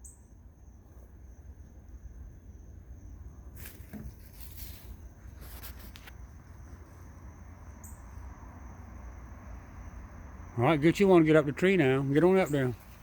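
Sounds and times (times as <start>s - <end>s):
crickets trilling: 0.0s - 13.0s
brief rustles: 3.6s - 6.2s.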